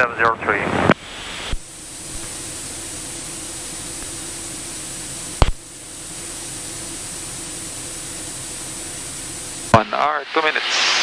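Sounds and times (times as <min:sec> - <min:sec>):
radio static hiss: 0:00.0 - 0:11.0
sharp click: 0:05.4 - 0:05.6.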